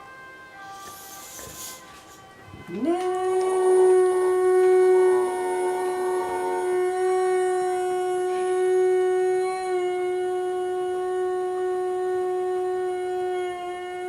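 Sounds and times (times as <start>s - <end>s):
fire alarm steady tone: 0.0s - 7.5s.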